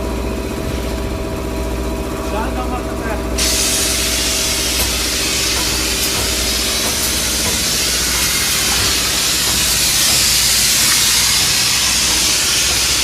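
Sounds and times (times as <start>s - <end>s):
spray gun hissing: 3.4s - 13.0s.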